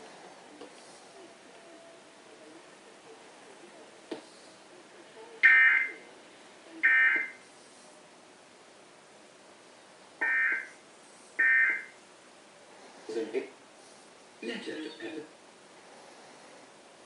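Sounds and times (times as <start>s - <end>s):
buzzing data bursts: 10.2s - 10.7s.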